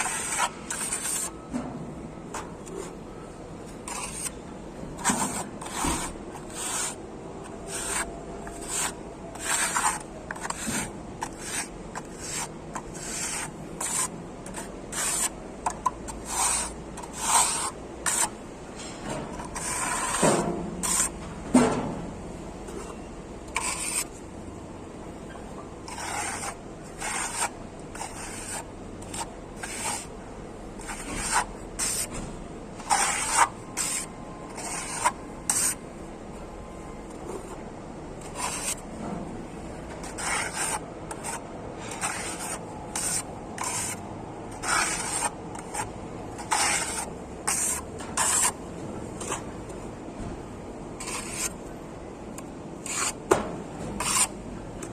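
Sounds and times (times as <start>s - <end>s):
trowel scraping plaster: 0.0s - 1.4s, 3.8s - 4.4s, 5.0s - 7.0s, 7.6s - 18.4s, 19.3s - 21.2s, 22.8s - 24.1s, 25.8s - 30.1s, 30.8s - 32.1s, 32.8s - 35.8s, 38.2s - 38.9s, 40.0s - 48.6s, 51.0s - 51.6s, 52.8s - 53.2s, 54.0s - 54.3s.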